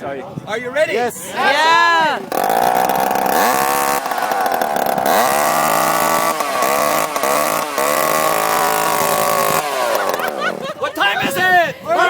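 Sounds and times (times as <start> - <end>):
chainsaw engine at high revs: 2.0 - 10.8.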